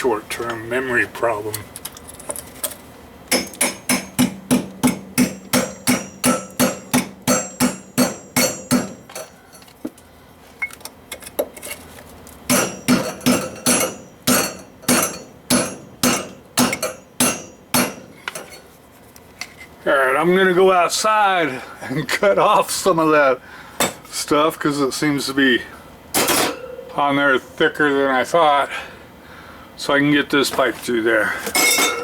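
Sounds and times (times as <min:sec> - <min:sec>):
hammer striking metal with ring: 0:03.3 - 0:09.3, 0:12.5 - 0:18.1.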